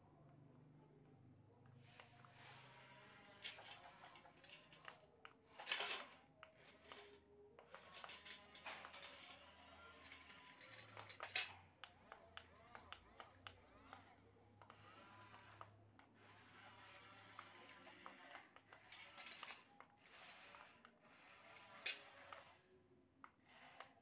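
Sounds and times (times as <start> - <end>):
plastic toys clicking and knocking: 3.2 - 16.2, 17.2 - 21.0.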